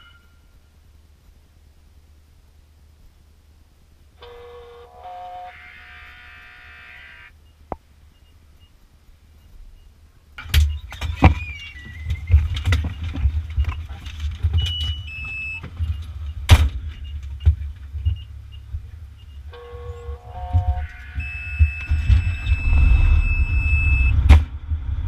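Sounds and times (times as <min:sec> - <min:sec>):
pitched tone: 0:04.2 - 0:07.3, 0:19.2 - 0:24.2
rattles and clicks: 0:10.4 - 0:19.3
fire engine rumbling: 0:10.4 - 0:25.0.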